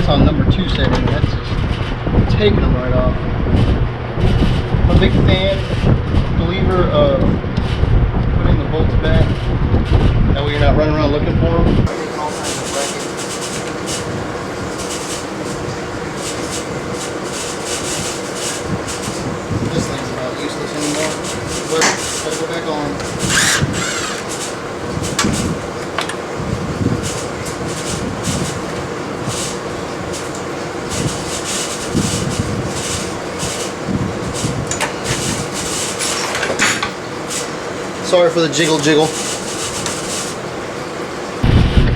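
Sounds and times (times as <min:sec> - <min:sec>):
steady background noise: 0:00.0 - 0:41.9
steady low hum: 0:00.0 - 0:41.9
scraping and rubbing of metal parts: 0:11.9 - 0:40.6.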